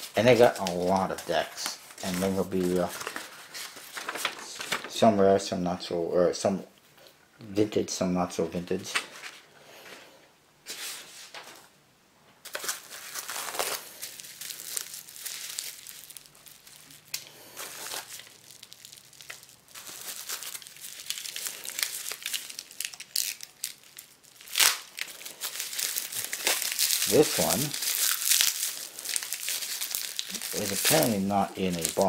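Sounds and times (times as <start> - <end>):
packaging crinkling and tearing: 0.0 - 5.0, 12.4 - 32.0
sharp packaging rip: 12.5 - 16.3, 17.1 - 32.0.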